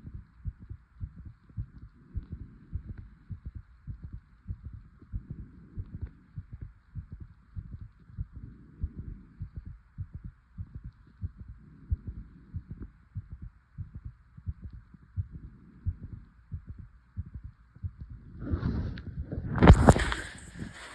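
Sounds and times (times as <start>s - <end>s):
fast heartbeat thumps: 0.0s - 20.9s
faint steady hiss: 19.7s - 20.9s.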